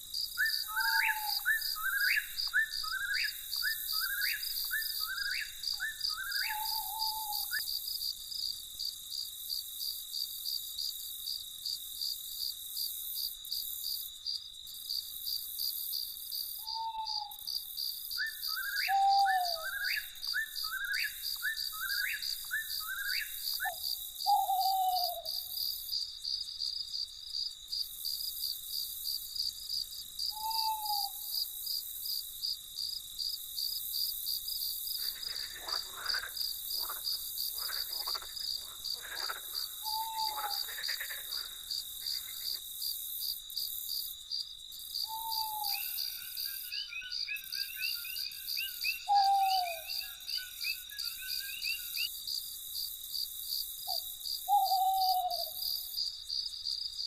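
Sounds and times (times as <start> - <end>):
frogs croaking: 0.0 - 7.8, 34.8 - 43.6, 44.3 - 52.4
crickets chirping: 0.0 - 57.0
owl hooting: 0.4 - 7.7, 16.6 - 17.4, 18.5 - 25.4, 30.4 - 31.3, 35.0 - 42.6, 45.1 - 46.6, 47.6 - 52.1, 53.9 - 55.6.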